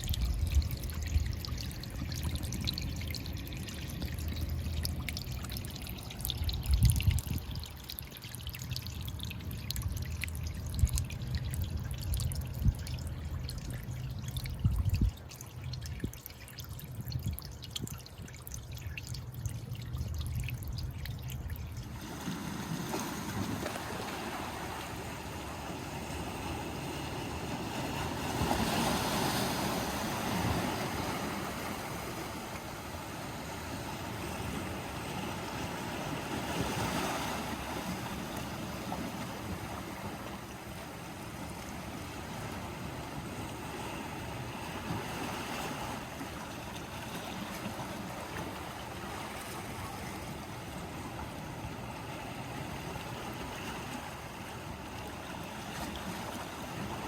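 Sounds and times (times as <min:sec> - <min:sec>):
crackling drips: 0:00.0 - 0:22.0
water lapping among rocks: 0:20.8 - 0:57.0
waves breaking on shore: 0:21.8 - 0:57.0.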